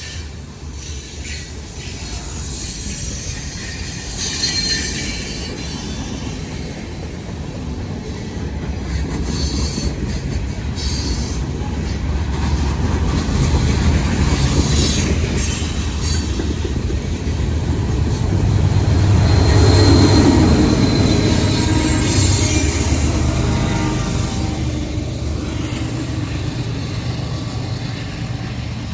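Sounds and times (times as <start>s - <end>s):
freight train rumbling past: 0.0s - 28.9s
high-pitched wheel squeal: 1.2s - 6.2s, 18.7s - 24.3s.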